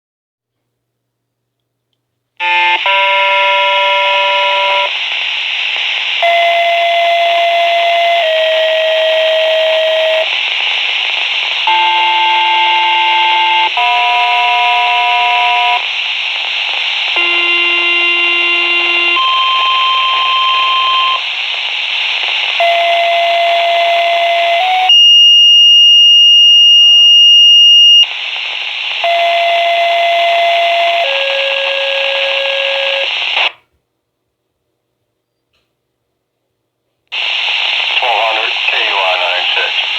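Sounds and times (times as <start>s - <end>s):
radio hiss: 3.5s - 13.8s, 14.4s - 24.8s, 28.0s - 33.6s, 37.1s - 39.9s.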